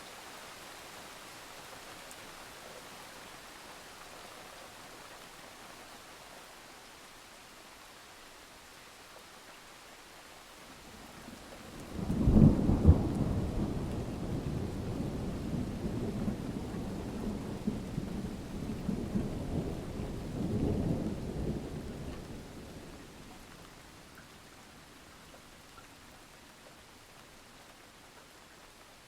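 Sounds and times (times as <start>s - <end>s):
steady rain: 0.0s - 29.0s
rolling thunder: 11.9s - 23.1s.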